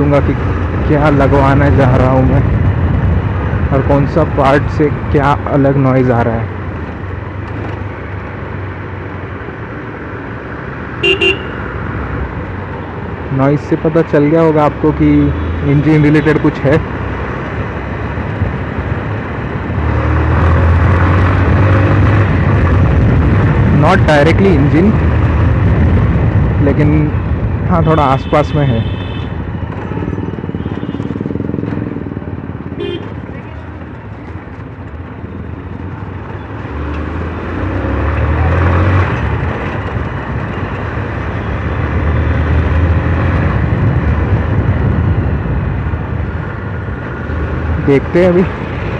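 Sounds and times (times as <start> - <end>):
wind and road noise: 0.0 - 48.9
motorcycle engine running: 29.6 - 36.6.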